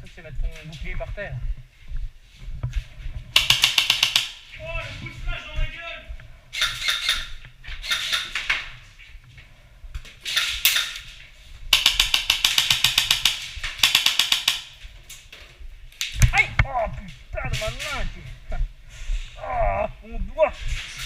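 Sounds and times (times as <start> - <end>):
airsoft guns firing full auto: 3.4 - 4.4, 11.7 - 14.8.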